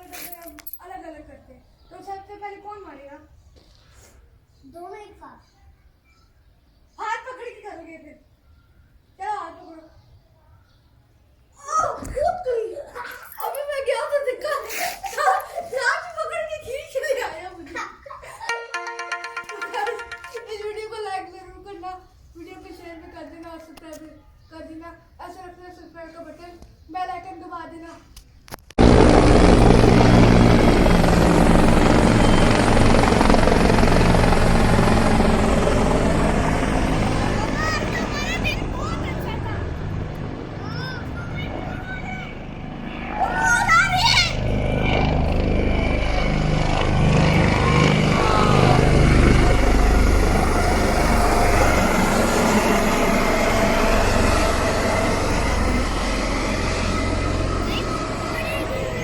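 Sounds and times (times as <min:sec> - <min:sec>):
helicopter rotor drone: 0:18.5 - 0:21.2, 0:28.8 - 0:59.0.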